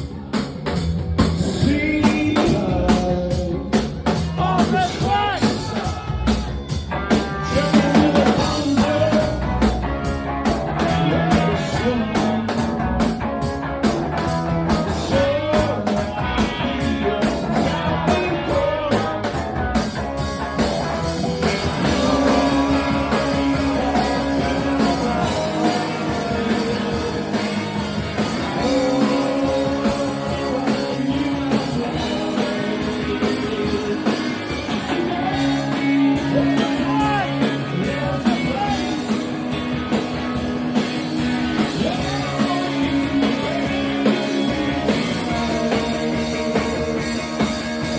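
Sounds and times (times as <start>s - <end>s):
rock band playing live: 0.0s - 47.9s
person singing: 1.4s - 9.9s, 10.7s - 12.8s, 14.7s - 19.6s, 21.2s - 39.3s, 41.6s - 47.9s
drum beat: 14.2s - 47.9s.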